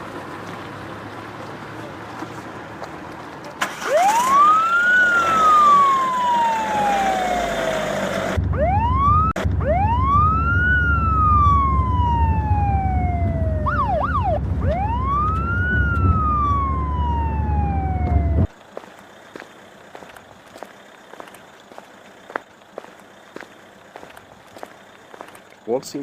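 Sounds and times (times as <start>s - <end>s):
police siren wailing: 3.7s - 18.6s
low rumble: 8.4s - 18.5s.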